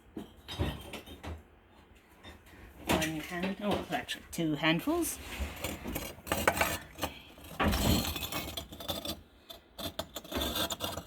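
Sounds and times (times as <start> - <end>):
ceramic pieces clinking and scraping: 5.5 - 11.0.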